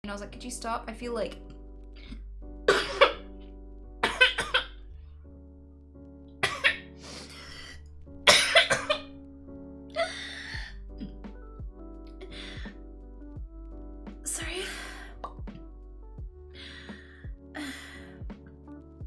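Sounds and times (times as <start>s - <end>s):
girl coughing harshly: 2.7s - 3.3s, 4.0s - 4.8s, 6.4s - 6.9s, 8.3s - 9.1s
noisy breath: 12.2s - 13.0s, 16.5s - 18.3s.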